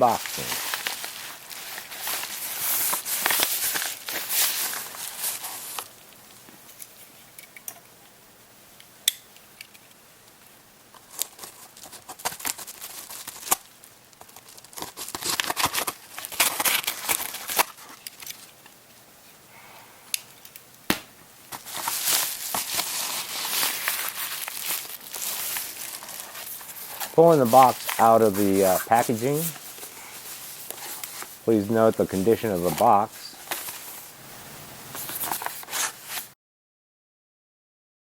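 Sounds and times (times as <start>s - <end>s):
packaging crinkling: 0.0s - 6.4s, 10.9s - 18.8s, 20.2s - 34.3s, 34.9s - 36.3s
packaging tearing: 0.1s - 5.9s, 11.0s - 18.5s, 20.9s - 34.1s, 34.9s - 36.3s.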